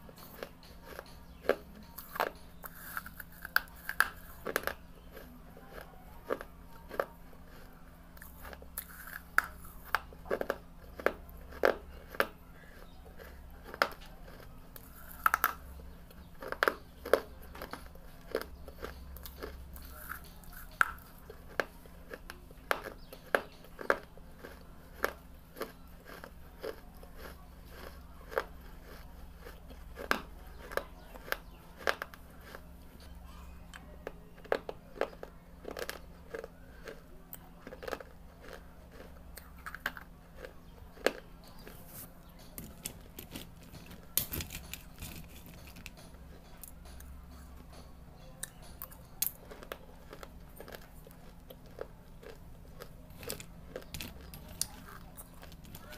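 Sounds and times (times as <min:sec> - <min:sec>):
faint low hum: 0:00.0 - 0:55.9
person crunching brick with teeth: 0:00.3 - 0:32.6, 0:34.4 - 0:37.0, 0:37.6 - 0:41.8, 0:42.6 - 0:46.7.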